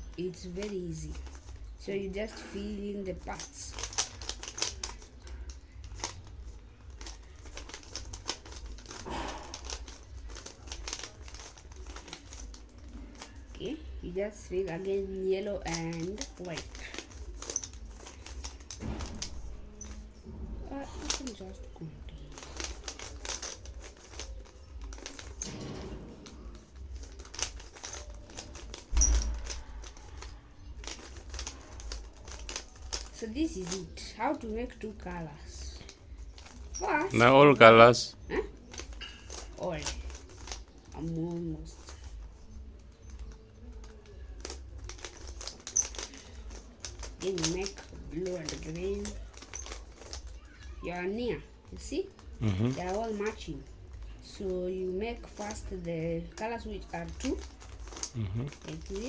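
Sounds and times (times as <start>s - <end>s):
plastic puzzle cube clicking: 0.3s - 1.6s, 3.2s - 13.7s, 15.6s - 20.2s, 20.9s - 33.9s, 38.6s - 50.6s, 56.8s - 59.0s.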